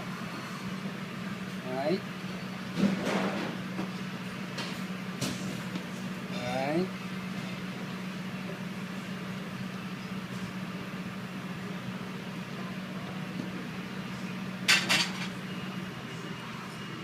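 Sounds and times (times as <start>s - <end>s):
low hum of kitchen equipment: 0.0s - 17.0s
kitchenware clinking: 14.7s - 15.3s.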